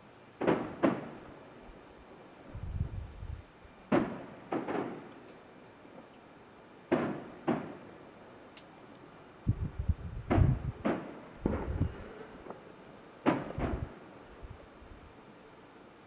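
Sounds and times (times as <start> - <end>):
distant firework bangs with echo: 0.4 - 1.4, 3.9 - 5.1, 6.9 - 8.0, 10.2 - 12.6, 13.2 - 14.2
low rumbling thuds: 9.5 - 12.0, 13.4 - 13.9.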